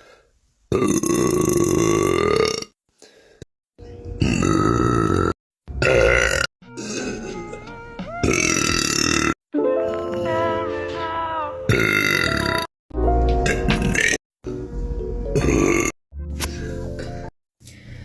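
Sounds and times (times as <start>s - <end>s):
loud drawn-out burps: 0.7s - 2.8s, 4.2s - 9.4s, 11.7s - 12.7s, 13.4s - 14.6s, 15.3s - 16.0s.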